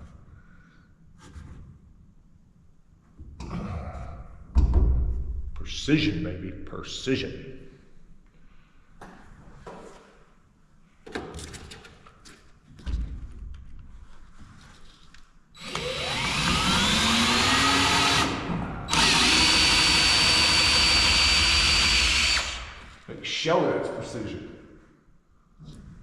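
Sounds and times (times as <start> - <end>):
power drill drilling into wood: 15.6 - 22.8.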